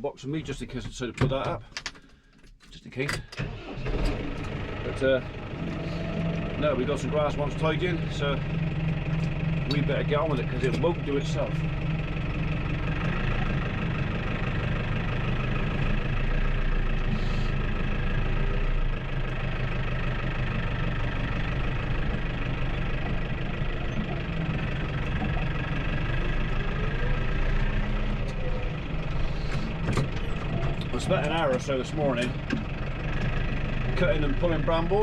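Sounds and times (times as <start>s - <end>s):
tractor engine running: 2.8s - 35.0s.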